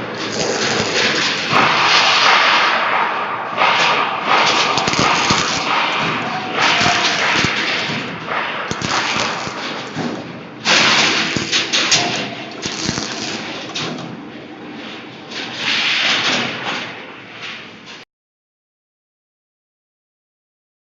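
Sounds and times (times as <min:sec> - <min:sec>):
welding machine hissing: 0:00.0 - 0:03.0, 0:03.6 - 0:14.2
metal knocks and clanks: 0:03.8 - 0:14.4.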